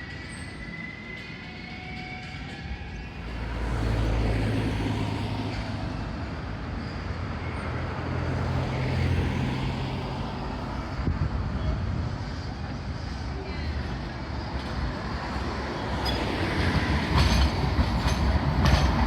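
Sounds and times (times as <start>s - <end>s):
faint high squeal: 0.0s - 3.4s.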